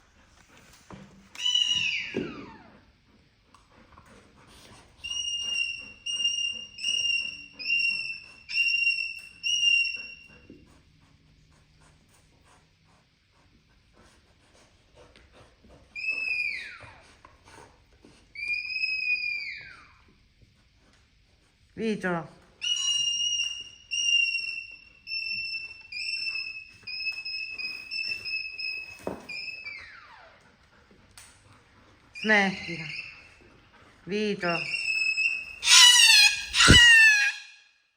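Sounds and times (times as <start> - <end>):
parrot whistling short notes: 35.6 - 37.5.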